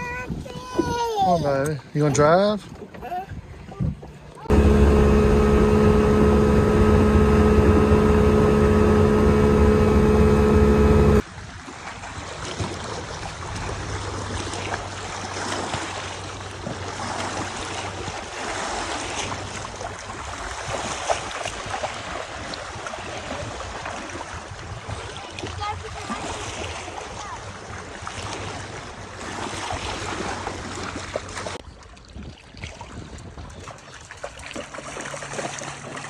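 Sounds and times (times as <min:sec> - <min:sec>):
wind: 0:00.0 - 0:36.0
water lapping: 0:01.5 - 0:36.0
faint low engine hum: 0:04.3 - 0:11.2
motorboat engine running: 0:04.4 - 0:11.2.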